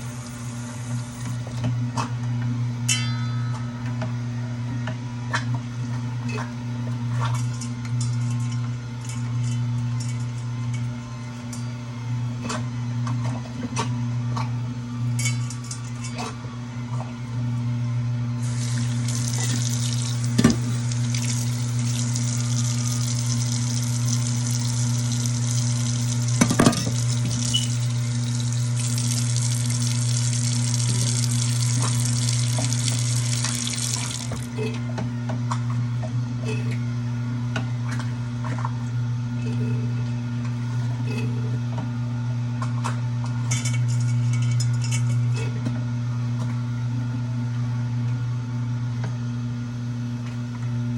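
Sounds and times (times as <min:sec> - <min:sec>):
steady low hum: 0:18.3 - 0:34.7
tap water running into sink: 0:18.4 - 0:34.6.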